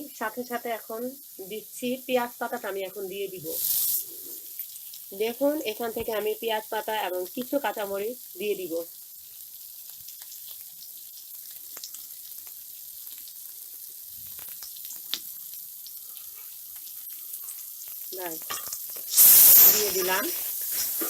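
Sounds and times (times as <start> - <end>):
food sizzling in a pan: 0.0 - 21.0.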